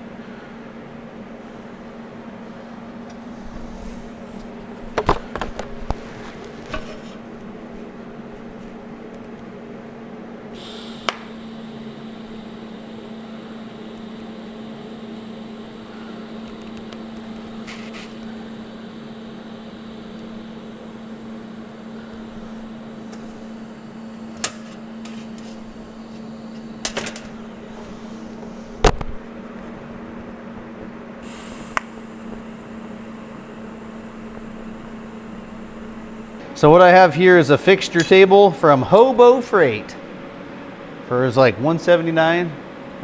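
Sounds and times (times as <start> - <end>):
electrical hum: 0.0 - 43.0.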